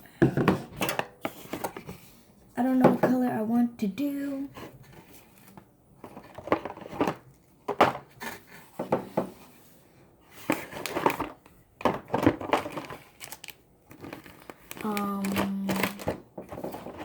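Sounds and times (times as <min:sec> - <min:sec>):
small bottles knocking together: 0:10.9 - 0:16.9.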